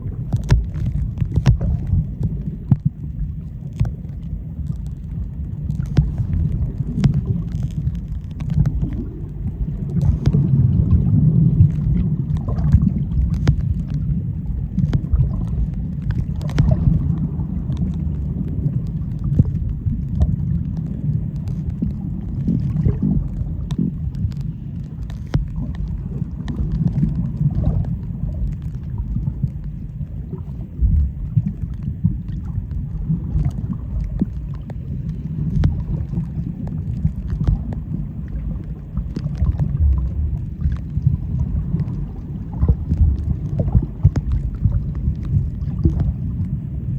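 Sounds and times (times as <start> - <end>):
underwater water rumble: 0.0 - 46.9
sharp clicks and crackles: 0.1 - 46.6.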